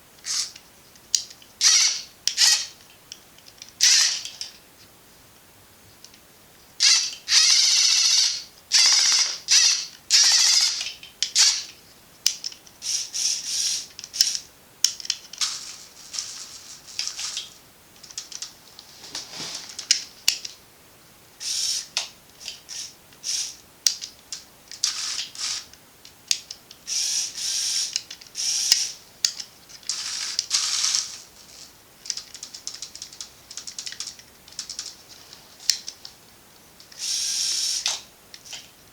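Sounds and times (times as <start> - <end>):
toy motors and gears whirring: 0.2 - 0.6, 1.2 - 2.8, 3.8 - 4.6, 6.8 - 18.4, 21.4 - 24.0, 24.7 - 36.0, 36.9 - 38.6.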